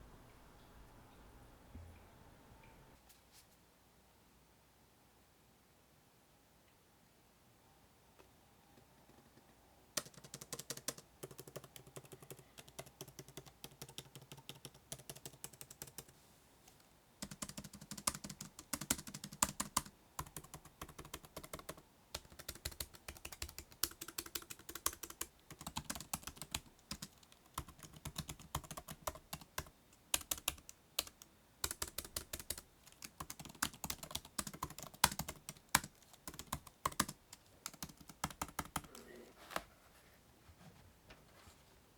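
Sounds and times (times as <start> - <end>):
laptop keyboard typing: 10.0 - 16.1, 17.2 - 39.1.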